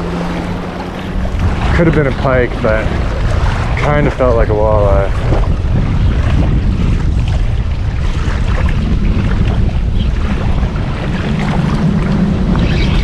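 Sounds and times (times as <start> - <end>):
wind buffeting microphone: 0.0 - 13.0.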